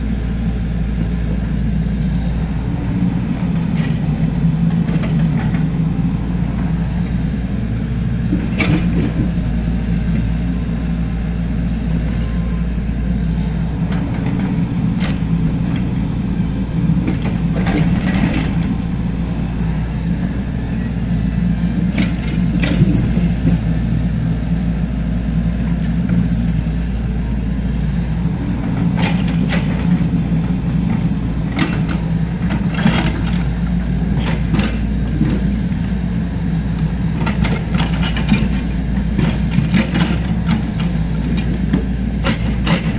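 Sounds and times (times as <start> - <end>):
excavator diesel engine running: 0.0 - 42.9.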